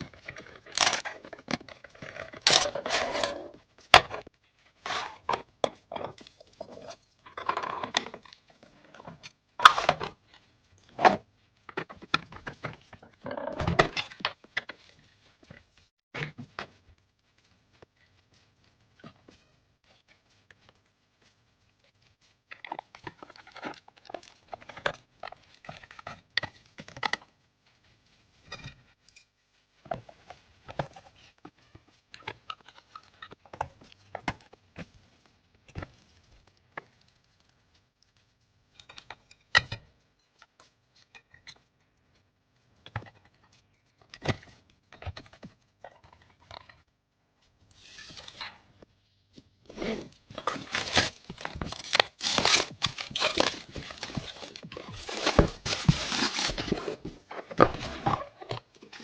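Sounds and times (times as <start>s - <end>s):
packaging rustling and crinkling: 0.0s - 10.4s, 49.7s - 59.0s.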